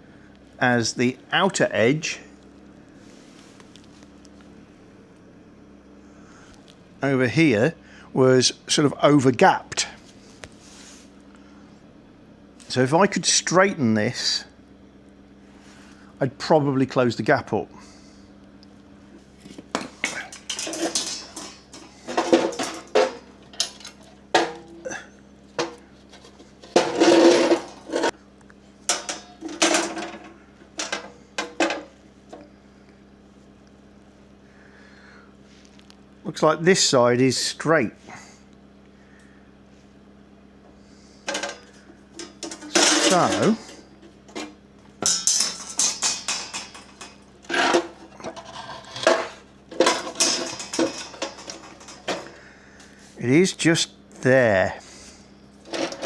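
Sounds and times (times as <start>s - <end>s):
metal panels knocking and clanking: 19.8s - 24.9s, 25.6s - 28.2s, 28.9s - 31.9s, 42.2s - 52.4s
metal clinking against sheet steel: 19.8s - 28.2s, 28.9s - 31.9s, 41.3s - 52.4s
metal scraping on metal: 25.6s - 28.2s, 42.3s - 52.3s.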